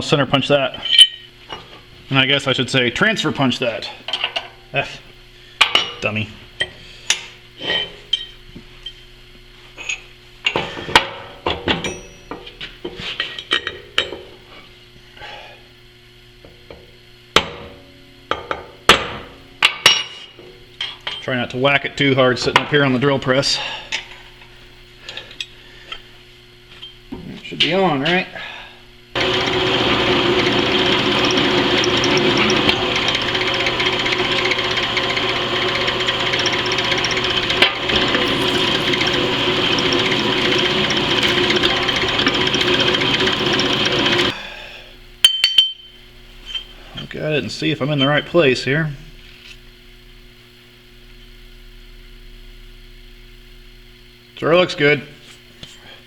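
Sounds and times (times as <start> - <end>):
drill press drilling steel: 29.2 - 44.4.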